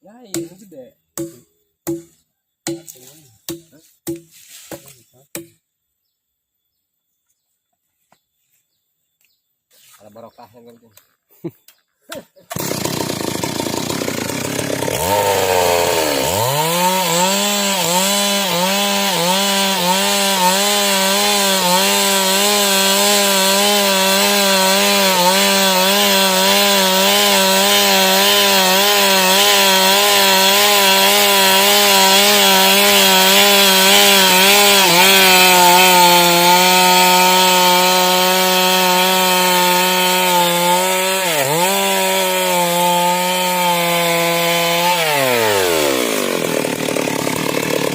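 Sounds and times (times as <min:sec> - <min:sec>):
chainsaw cutting a log: 0:12.5 - 0:47.9.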